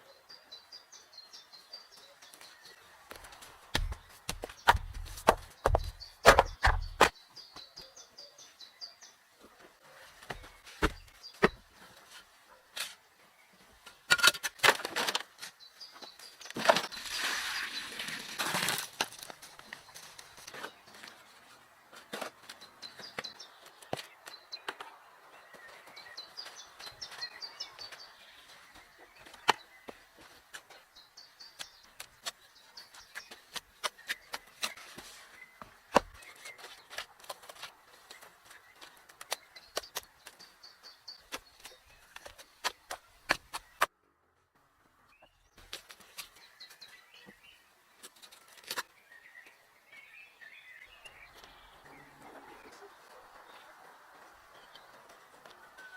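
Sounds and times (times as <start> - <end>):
scraping or rustling: 16.5 - 20.8.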